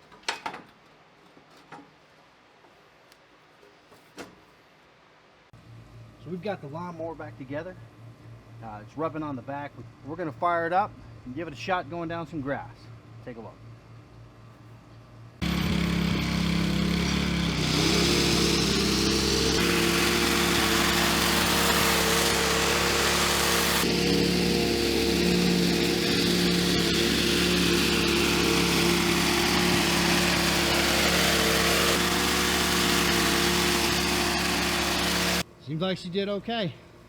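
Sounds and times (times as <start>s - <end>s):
lawnmower engine drone: 15.2s - 35.4s
mower reel spinning: 15.4s - 35.4s.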